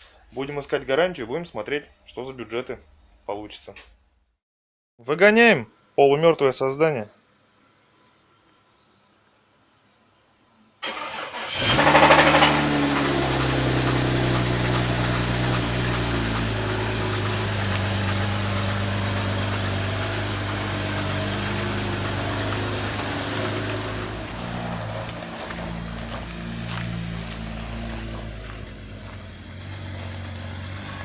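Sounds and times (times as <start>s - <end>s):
engine starter cranking: 10.8s - 22.2s
engine idling: 10.9s - 31.0s.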